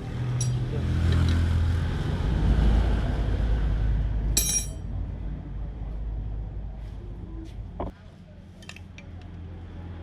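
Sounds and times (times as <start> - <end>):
metallic clink: 4.4 - 4.9.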